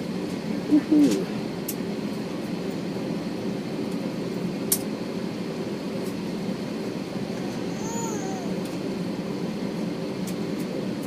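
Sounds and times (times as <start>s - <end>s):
aircraft cabin engine drone: 0.0s - 11.0s.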